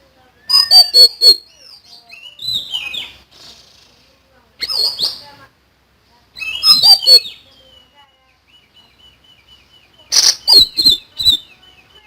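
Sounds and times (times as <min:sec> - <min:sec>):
songbird whistling: 0:00.4 - 0:03.5, 0:04.6 - 0:05.3, 0:06.4 - 0:12.0.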